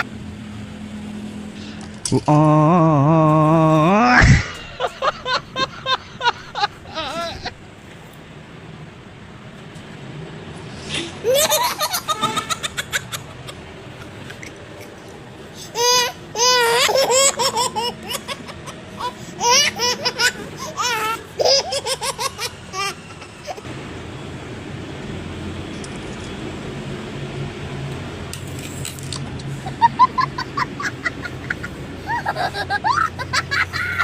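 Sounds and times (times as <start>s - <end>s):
person laughing hard: 2.1s - 7.6s, 11.2s - 14.4s, 29.6s - 34.0s.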